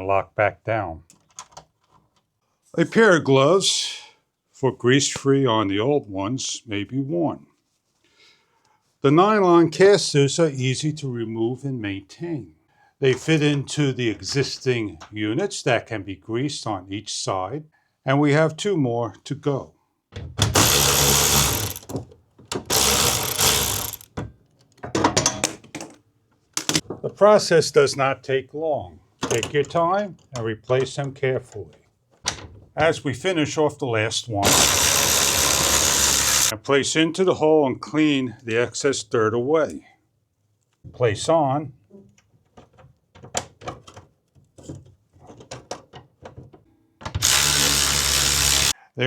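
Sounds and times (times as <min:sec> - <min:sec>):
garage door roller hardware clicking: 0:20.4 - 0:25.4, 0:34.4 - 0:36.5
cordless power driver running: 0:20.6 - 0:21.9, 0:22.7 - 0:24.1, 0:34.5 - 0:36.5, 0:47.2 - 0:48.7.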